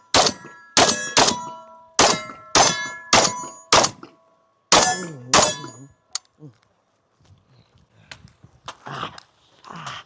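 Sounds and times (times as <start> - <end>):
gunshots: 0.0 - 4.1
bullet clanging on steel target: 0.0 - 5.9.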